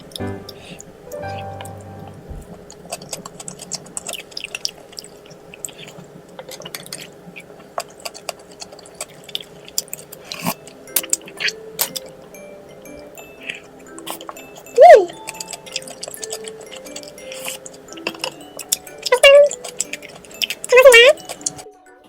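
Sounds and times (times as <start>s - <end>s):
person chewing: 2.8s - 12.1s, 15.2s - 21.7s.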